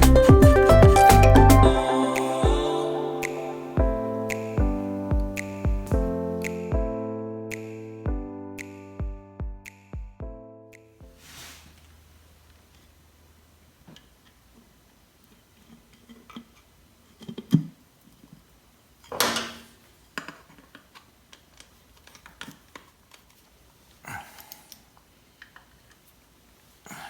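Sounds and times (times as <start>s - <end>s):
small tools clicking and tapping: 20.1s - 23.4s.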